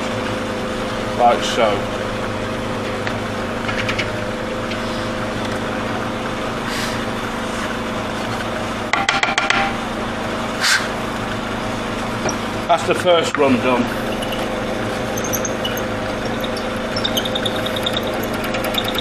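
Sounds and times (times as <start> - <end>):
mortise machine humming: 11.5 - 19.0
rattle of clicks: 14.1 - 19.0.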